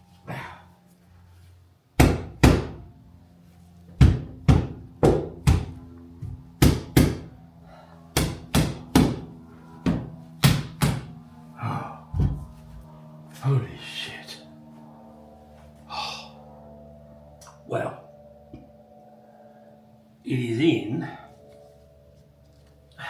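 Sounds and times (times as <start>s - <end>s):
sharp knocks on metal trim: 2.0s - 2.8s, 4.0s - 7.4s, 8.1s - 11.2s.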